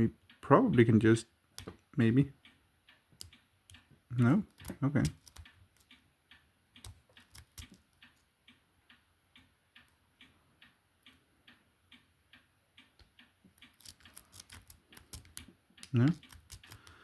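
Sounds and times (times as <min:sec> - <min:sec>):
lock pick clicking in padlock: 0:04.5 - 0:05.9, 0:06.8 - 0:07.9, 0:13.6 - 0:16.9.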